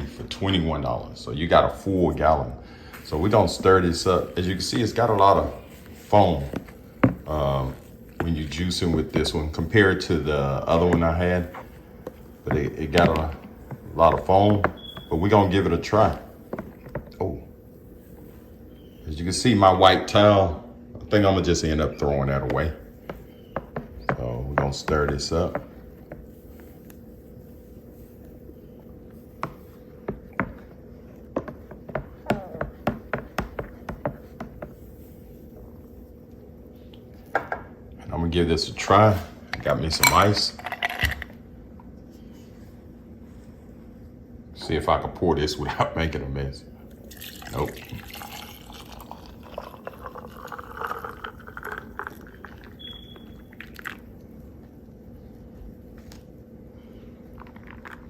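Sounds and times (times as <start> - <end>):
ice clinking in glass: 40.0 - 41.2, 47.1 - 54.0
juice pouring and splashing: 46.9 - 54.4, 57.3 - 58.0.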